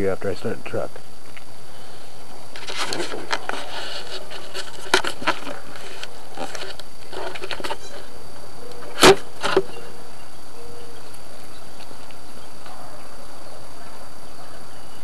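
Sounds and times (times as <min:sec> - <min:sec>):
rustling: 0:01.3 - 0:10.0.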